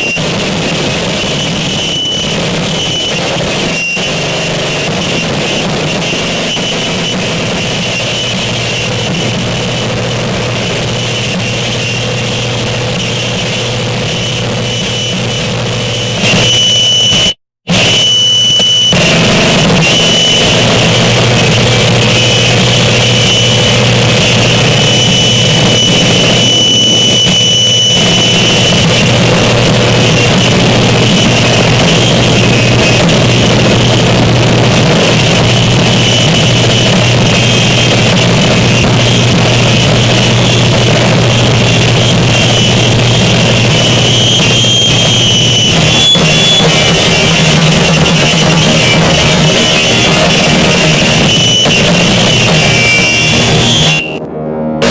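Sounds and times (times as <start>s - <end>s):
distorted noise wall: 0.0s - 54.9s
high whine: 0.0s - 54.9s
low hum: 46.4s - 54.9s.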